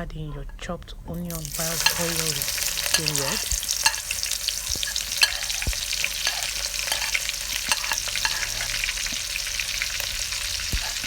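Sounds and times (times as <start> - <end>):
onion sizzling in oil: 1.3 - 11.0
stirring clicks: 1.4 - 9.4.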